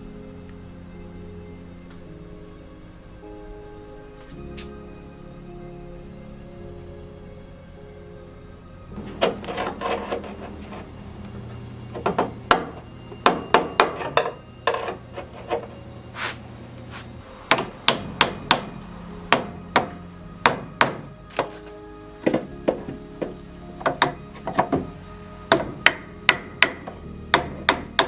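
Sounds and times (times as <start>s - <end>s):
hammer on sheet metal: 25.5s - 28.0s.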